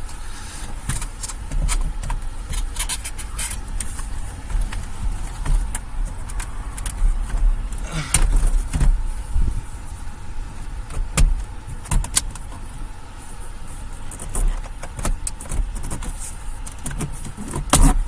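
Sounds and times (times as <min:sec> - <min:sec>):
low rumble: 0:00.0 - 0:13.0.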